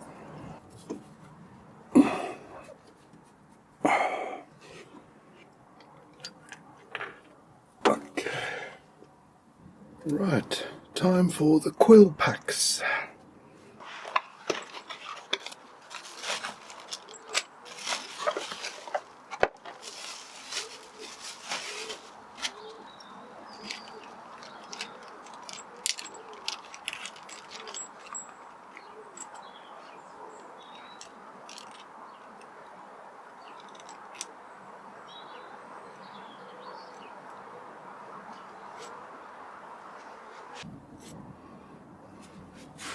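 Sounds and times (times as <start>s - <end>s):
hand tools clicking and clinking: 13.8s - 34.4s.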